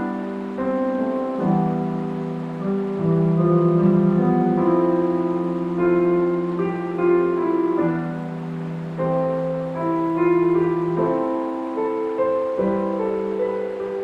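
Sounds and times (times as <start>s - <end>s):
slow solo piano music: 0.0s - 14.0s.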